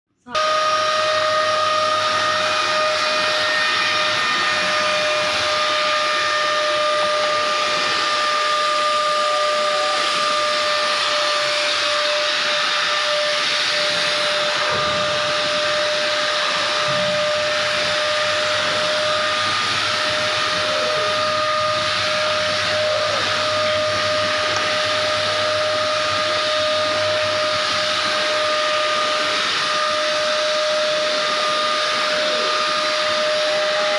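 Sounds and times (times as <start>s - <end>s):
vacuum cleaner running: 0.2s - 33.9s.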